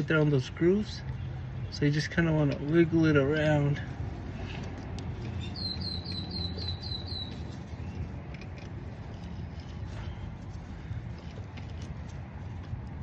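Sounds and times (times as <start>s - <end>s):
bird chirping: 5.2s - 8.0s.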